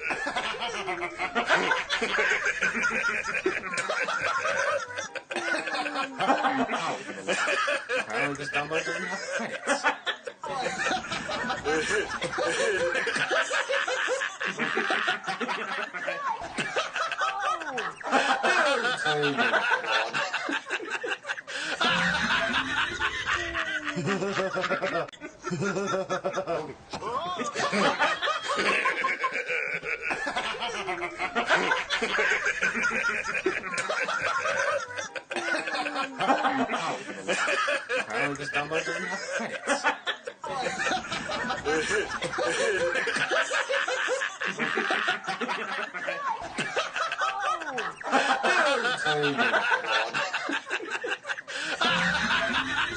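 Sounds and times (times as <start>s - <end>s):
men laughing together: 0.0s - 52.9s.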